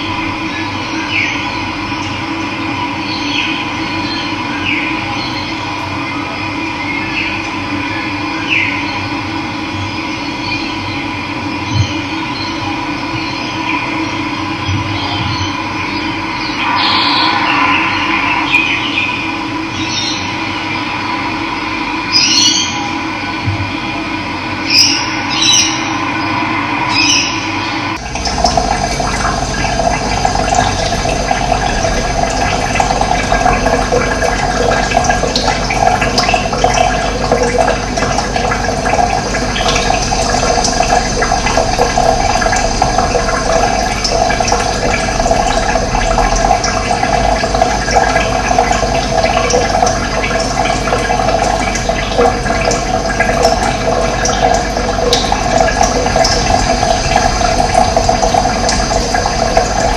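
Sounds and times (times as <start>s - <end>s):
running water: 0.0s - 8.8s, 24.7s - 59.9s
tonal sound with high chirps: 13.2s - 22.9s, 24.6s - 59.9s.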